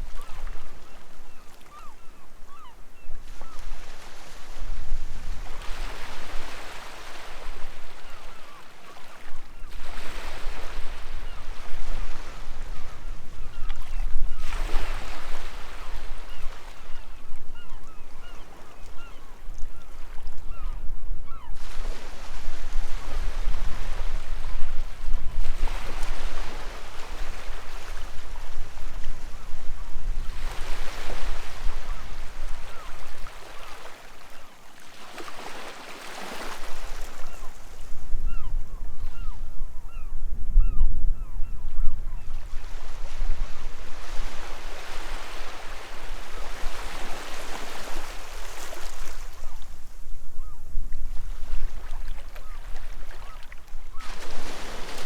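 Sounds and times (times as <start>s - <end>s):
waves washing on shore: 30.3s - 34.2s.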